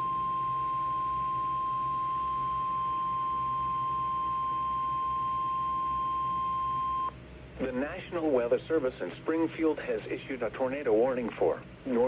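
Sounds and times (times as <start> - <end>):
steady warning alarm tone: 0.0 - 7.1.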